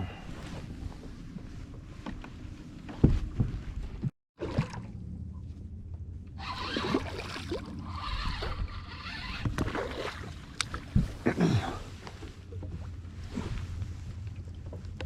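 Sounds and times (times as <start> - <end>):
boat motor humming: 4.8 - 15.0.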